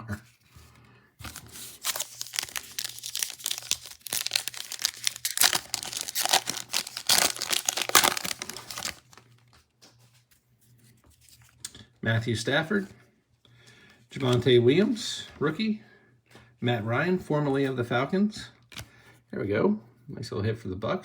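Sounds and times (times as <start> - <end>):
wrapper tearing and crinkling: 1.2 - 9.4.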